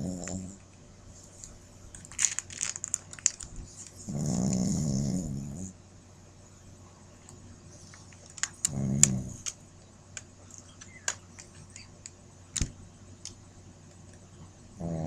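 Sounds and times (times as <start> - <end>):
puppy snoring growl: 0.0 - 0.6, 4.0 - 5.8, 8.6 - 9.5, 14.7 - 15.0.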